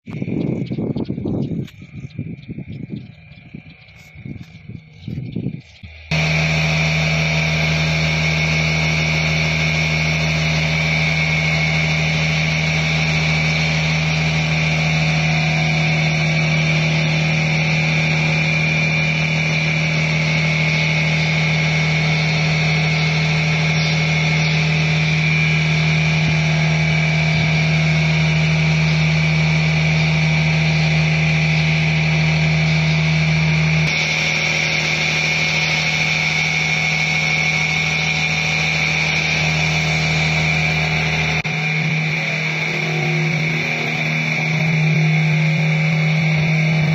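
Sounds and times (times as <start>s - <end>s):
machine humming and whining: 0.0s - 46.9s.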